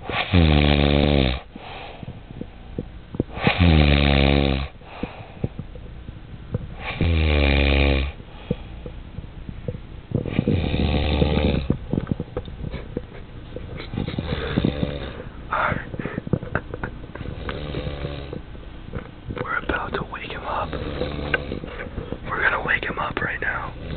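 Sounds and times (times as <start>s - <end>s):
man snoring heavily: 0.0s - 1.5s, 3.4s - 4.7s, 6.8s - 8.2s, 10.3s - 11.7s, 13.9s - 15.9s, 17.3s - 18.3s, 20.5s - 21.7s.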